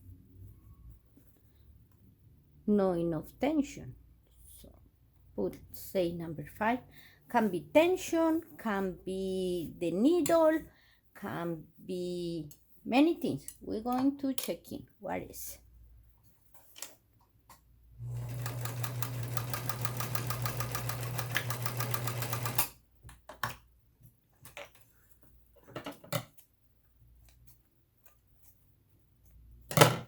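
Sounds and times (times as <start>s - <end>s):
sewing machine sewing: 18.0s - 22.7s.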